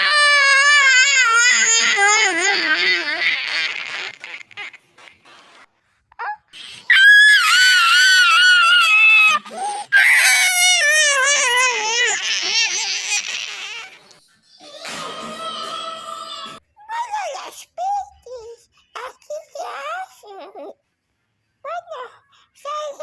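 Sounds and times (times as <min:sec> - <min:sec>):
high-pitched crying wails: 0:00.0 - 0:04.8, 0:06.3 - 0:14.0.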